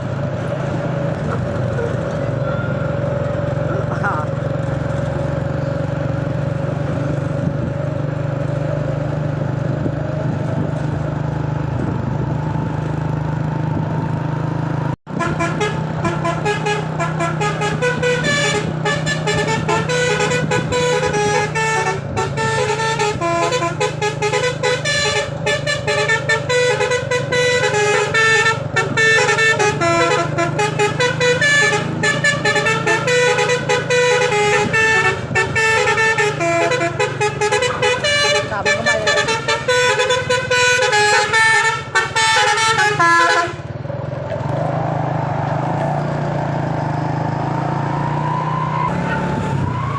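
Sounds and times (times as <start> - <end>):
truck engine running: 0.0 - 49.9
multi-tone air horn melody: 15.1 - 43.7.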